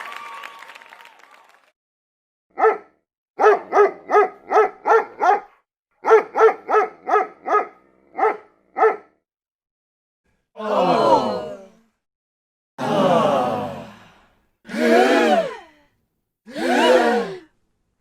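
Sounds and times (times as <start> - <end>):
dog barking: 2.6 - 9.2.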